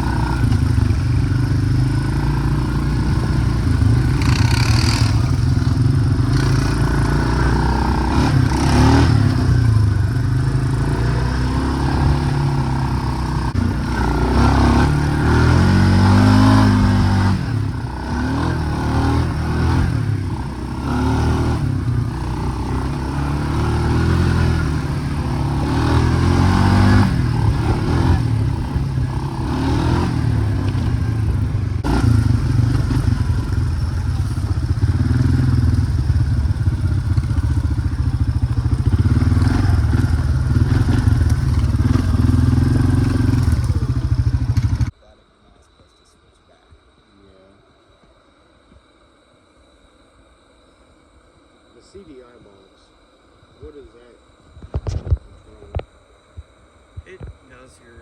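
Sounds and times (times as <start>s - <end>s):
atv engine revving: 0.0s - 45.0s.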